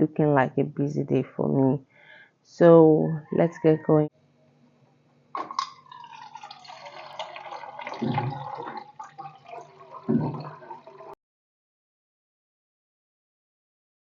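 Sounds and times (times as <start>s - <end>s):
water running and splashing: 5.4s - 11.2s.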